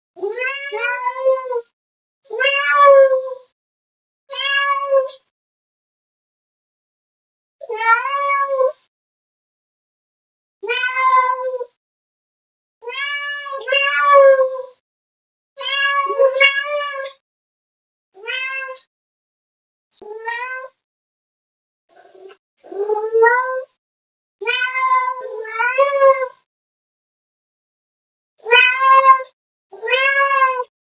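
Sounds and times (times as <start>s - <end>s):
cat meowing: 4.3s - 5.1s, 15.6s - 17.1s, 18.2s - 18.9s, 20.1s - 20.7s, 28.5s - 30.7s.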